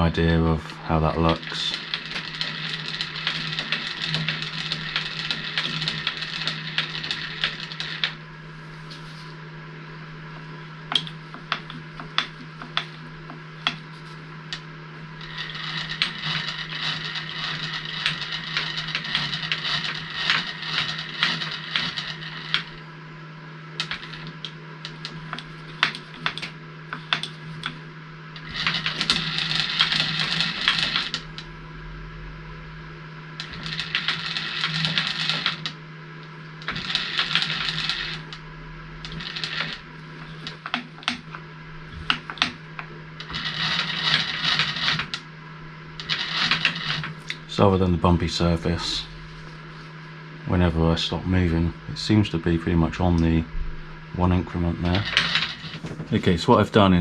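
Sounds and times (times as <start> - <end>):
steady low hum: 0.0 - 57.0
metal sliding and scraping: 1.0 - 9.4, 10.9 - 22.8, 28.4 - 31.6, 36.6 - 45.2, 54.5 - 56.4.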